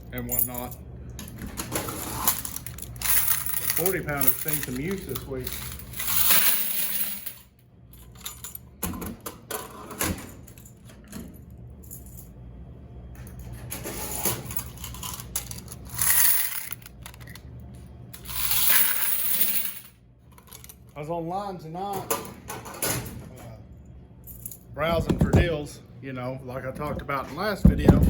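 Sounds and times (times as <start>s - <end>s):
coins clinking and rattling: 1.6s - 8.7s, 13.7s - 17.4s, 18.1s - 20.9s
coins jingling and pouring: 1.8s - 7.5s, 14.0s - 17.0s, 18.2s - 20.7s.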